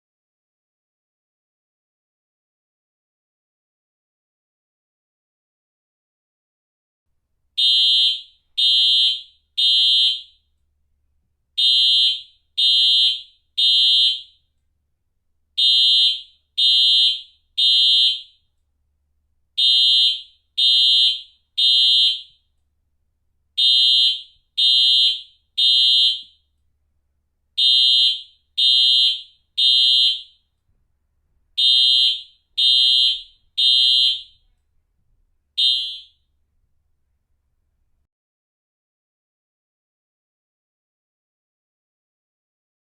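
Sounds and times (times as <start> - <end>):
fire alarm high-pitched blasts: 7.6 - 10.4, 11.6 - 14.4, 15.6 - 18.4, 19.6 - 22.4, 23.6 - 26.4, 27.6 - 30.4, 31.6 - 34.4, 35.6 - 36.2.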